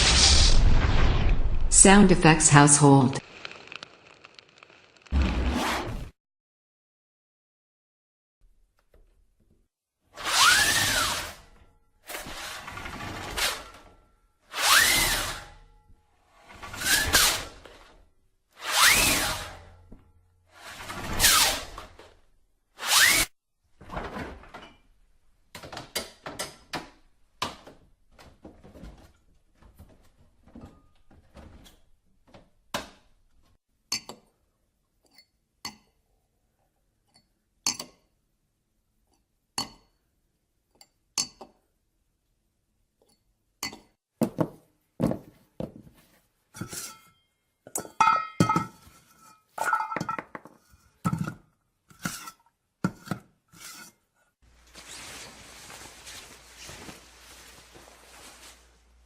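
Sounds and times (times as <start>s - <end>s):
dishes and glassware clinking: 46.6s - 51.4s.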